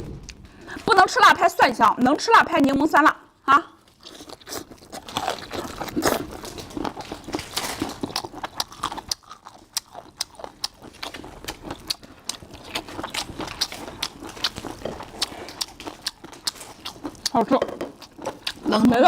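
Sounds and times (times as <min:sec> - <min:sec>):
person chewing crunchily: 0:03.8 - 0:19.0.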